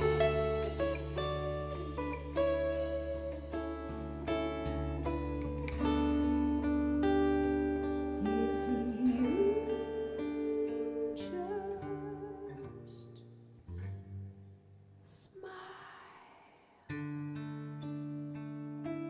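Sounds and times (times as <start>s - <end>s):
acoustic guitar chords: 0.0s - 15.1s, 16.9s - 19.0s
wordless vocal: 8.2s - 13.0s, 15.1s - 16.9s.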